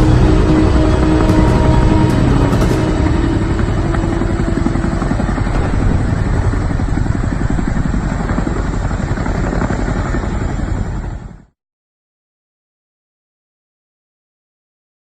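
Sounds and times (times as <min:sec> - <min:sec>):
helicopter rotors beating: 0:00.0 - 0:11.5
turbine engines rushing: 0:00.0 - 0:11.5.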